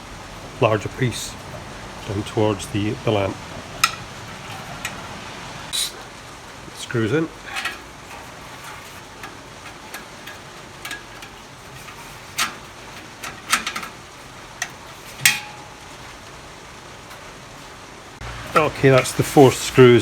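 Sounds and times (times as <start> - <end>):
metallic clicks of screws tightened: 7.4 - 15.3.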